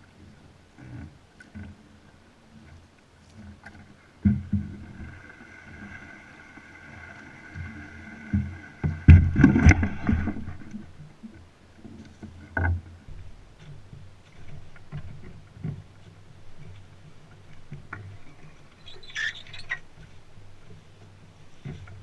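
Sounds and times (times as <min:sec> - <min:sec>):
paddle knocking on canoe hull: 0:08.2 - 0:10.7.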